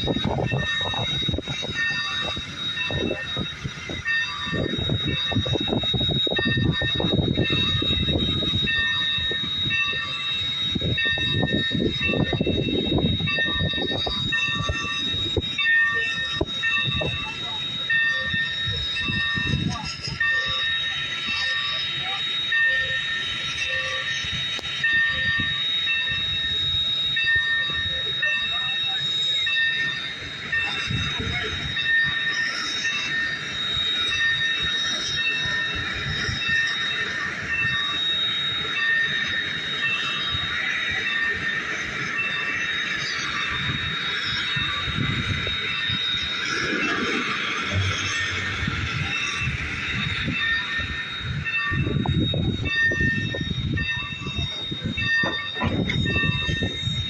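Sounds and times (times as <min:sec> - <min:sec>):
high ringing tone: 0:00.0 - 0:57.0
high whine: 0:00.0 - 0:57.0
train wheels rumbling: 0:00.0 - 0:57.0.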